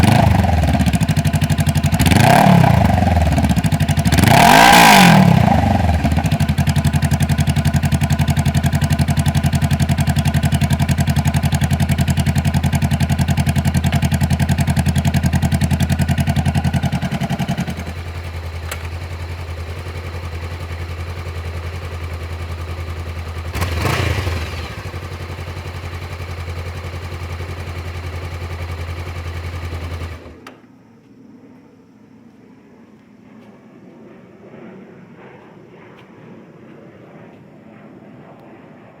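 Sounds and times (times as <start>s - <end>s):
motorcycle engine idling: 0.0s - 30.5s.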